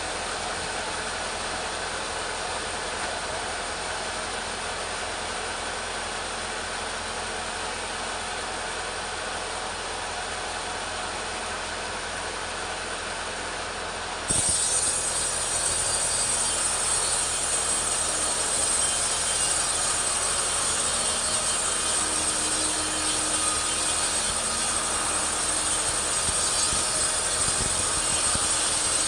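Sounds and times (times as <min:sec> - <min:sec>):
chainsaw cutting through log: 0:14.3 - 0:29.0.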